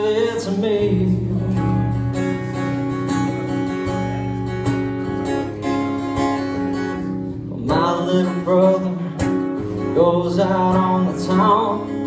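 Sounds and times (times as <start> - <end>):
acoustic guitar strumming chords: 0.0 - 12.0.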